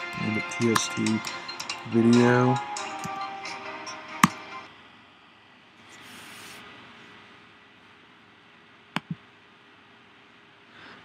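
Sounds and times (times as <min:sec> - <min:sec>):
faint hiss: 0:05.8 - 0:07.2.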